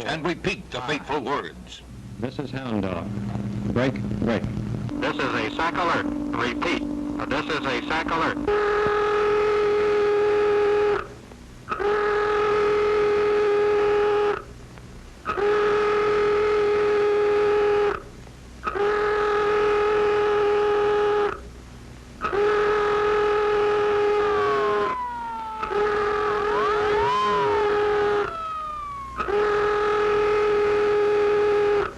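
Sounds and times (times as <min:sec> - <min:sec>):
klaxon horn blasts: 0:04.9 - 0:11.1, 0:11.7 - 0:14.4, 0:15.2 - 0:18.0, 0:18.6 - 0:21.4, 0:22.2 - 0:31.9.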